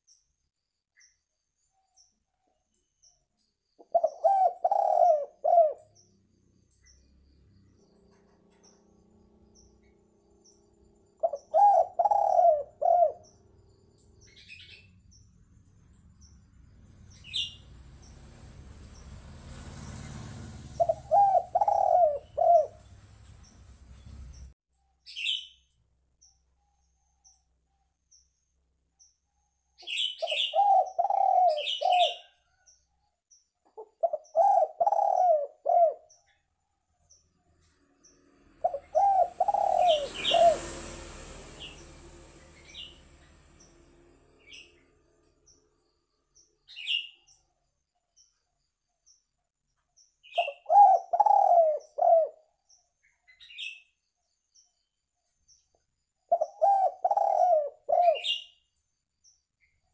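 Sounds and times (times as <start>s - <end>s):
small bird chirping: 0.0s - 40.9s, 41.5s - 59.9s
dove cooing: 3.8s - 6.0s, 11.2s - 13.4s, 20.4s - 23.2s, 30.2s - 32.4s, 33.8s - 36.1s, 38.6s - 41.0s, 50.3s - 52.5s, 56.3s - 58.4s
brief rushing noise: 16.8s - 24.6s, 38.9s - 44.8s.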